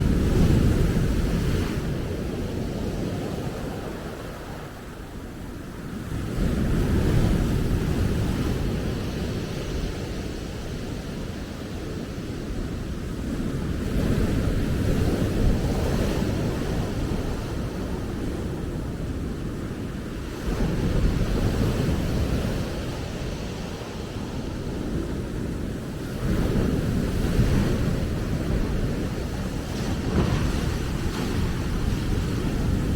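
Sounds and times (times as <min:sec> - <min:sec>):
wind on microphone: 0:00.0 - 0:32.9
ocean waves breaking: 0:14.1 - 0:32.9.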